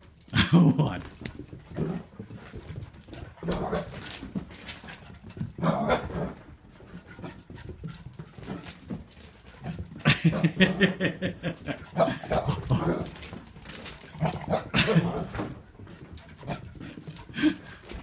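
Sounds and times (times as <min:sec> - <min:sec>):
rapid patter of clicks: 0:01.0 - 0:18.0
excited dog vocalizing: 0:04.8 - 0:13.3, 0:14.0 - 0:15.6.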